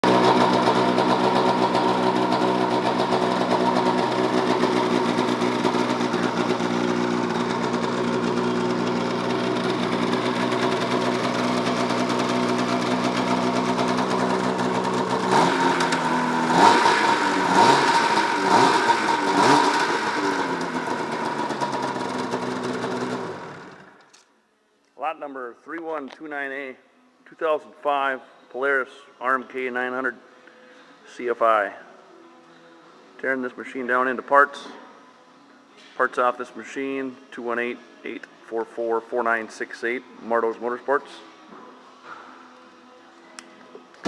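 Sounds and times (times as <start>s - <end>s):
snowmobile engine idling and revving: 0.0s - 23.9s.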